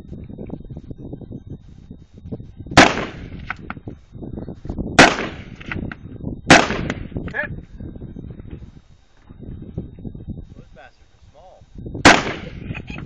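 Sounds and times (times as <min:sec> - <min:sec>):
loud gunshots: 0:02.8 - 0:03.5, 0:05.0 - 0:05.8, 0:06.5 - 0:07.0, 0:12.0 - 0:12.6.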